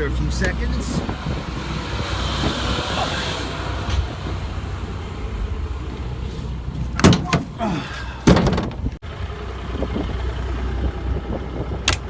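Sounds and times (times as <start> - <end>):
excavator diesel engine running: 9.0 - 12.0.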